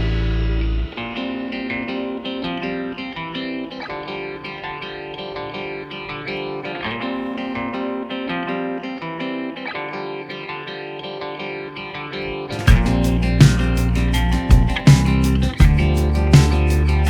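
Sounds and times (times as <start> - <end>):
music with heavy bass and beats: 0.0 - 1.0, 12.6 - 17.0
guitar music: 0.0 - 17.0.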